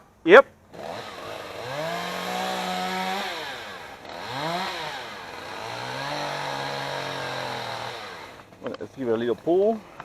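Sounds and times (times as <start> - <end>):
two-stroke chainsaw revving: 0.7 - 8.6.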